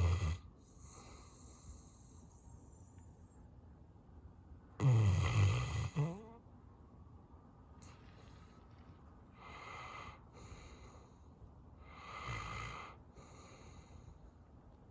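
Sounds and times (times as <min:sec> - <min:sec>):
faint dog snore: 0:00.0 - 0:02.9, 0:04.8 - 0:06.4, 0:09.4 - 0:11.1, 0:11.8 - 0:14.2
dog breathing heavily asleep: 0:00.0 - 0:03.0, 0:09.4 - 0:14.4.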